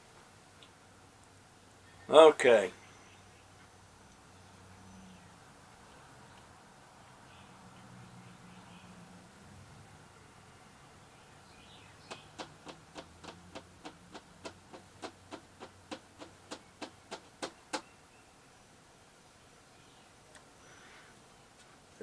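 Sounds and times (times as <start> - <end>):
sharp knocks: 12.1 - 17.9.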